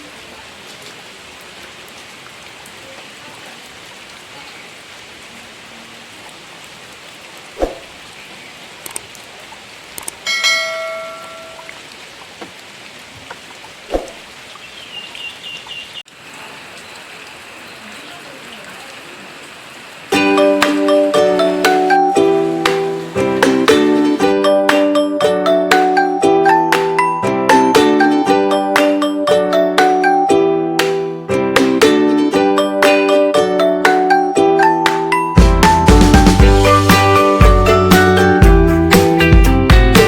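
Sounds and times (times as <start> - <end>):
steady rain falling: 0.0 - 30.0, 31.8 - 40.0.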